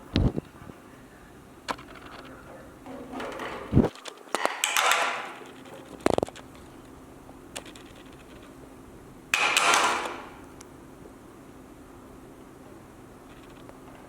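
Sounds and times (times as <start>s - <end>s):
tools clicking and knocking: 1.7s - 6.6s, 9.4s - 10.4s.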